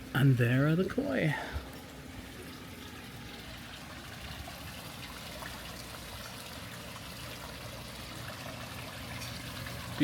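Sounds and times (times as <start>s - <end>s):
water trickling into pond: 0.0s - 10.0s.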